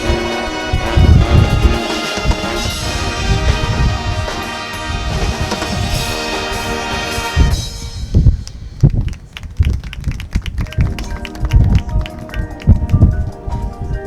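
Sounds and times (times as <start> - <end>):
brass chord: 0.0 - 8.8
snare and cymbal hits: 0.0 - 8.9
bass drum thumps: 7.4 - 9.6.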